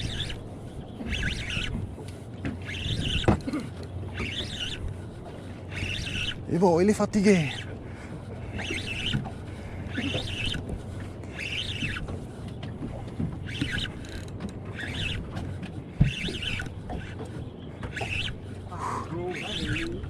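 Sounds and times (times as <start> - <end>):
fishing reel winding: 0.0 - 0.4, 1.1 - 1.8, 2.6 - 3.3, 4.2 - 4.9, 5.7 - 7.7, 8.5 - 9.2, 9.9 - 10.6, 11.3 - 12.1, 13.4 - 15.4, 16.2 - 17.2, 17.8 - 18.5, 19.3 - 20.0
boat engine humming: 0.0 - 20.0.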